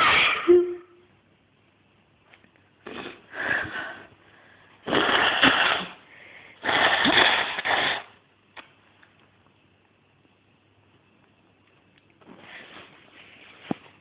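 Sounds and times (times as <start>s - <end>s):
faint breath: 3.3s - 4.8s, 6.0s - 6.6s
air blasting through nose: 4.8s - 6.0s, 6.6s - 8.2s.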